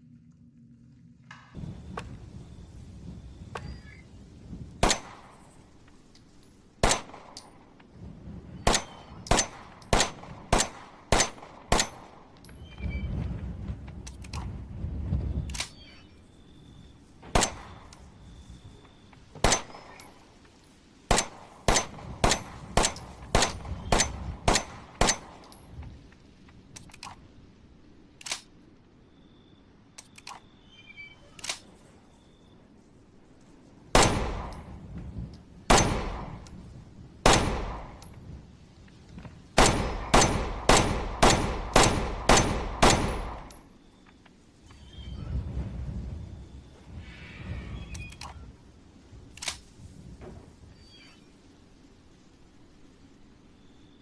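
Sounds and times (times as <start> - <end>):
pistol shots: 6.8 - 7.3, 8.7 - 12.1, 34.0 - 34.6, 35.7 - 36.4, 37.2 - 38.0, 39.6 - 43.5.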